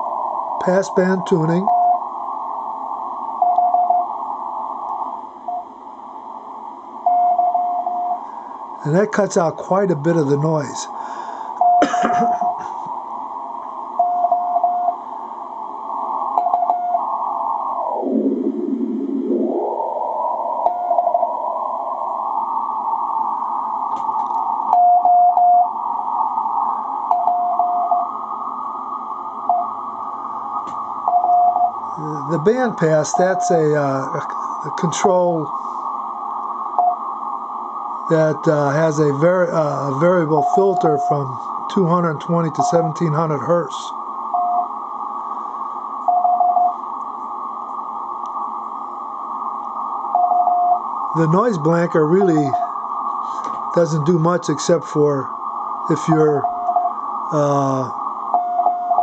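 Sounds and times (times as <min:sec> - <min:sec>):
radio band hiss: 0:00.0 - 0:07.1, 0:07.8 - 0:14.1, 0:14.7 - 0:59.0
morse code beeps: 0:01.6 - 0:02.0, 0:03.4 - 0:04.1, 0:07.1 - 0:08.2, 0:11.6 - 0:12.7, 0:14.0 - 0:15.0, 0:16.4 - 0:17.0, 0:24.7 - 0:25.7, 0:27.1 - 0:28.1, 0:29.5 - 0:29.8, 0:31.0 - 0:31.8, 0:36.8 - 0:37.0, 0:40.1 - 0:43.0, 0:44.4 - 0:44.7, 0:46.0 - 0:46.8, 0:50.2 - 0:50.8, 0:56.0 - 0:57.0, 0:58.3 - 0:59.0
morse code tone: 0:07.1 - 0:08.2, 0:14.0 - 0:15.0, 0:40.0 - 0:43.2, 0:44.4 - 0:44.7, 0:46.1 - 0:46.8, 0:56.0 - 0:57.6, 0:58.4 - 0:59.0.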